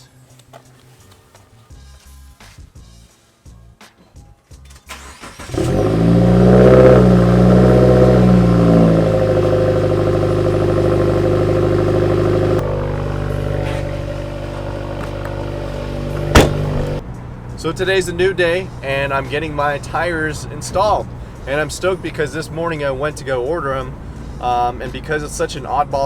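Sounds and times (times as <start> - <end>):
car engine starting and idling: 4.8 - 17.0.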